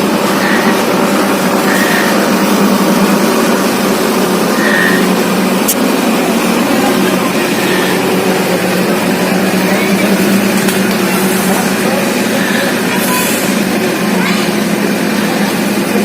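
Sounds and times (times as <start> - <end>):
engine-like drone: 0.0 - 16.0
short high peeps: 0.3 - 1.0, 1.6 - 2.5, 4.5 - 5.2.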